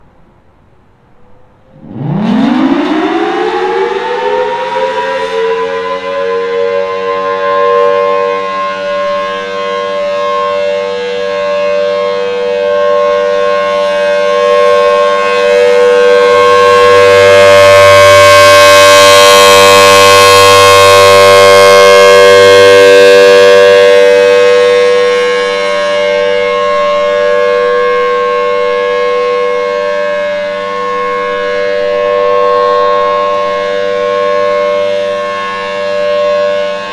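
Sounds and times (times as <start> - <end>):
warning siren: 1.1 - 36.9.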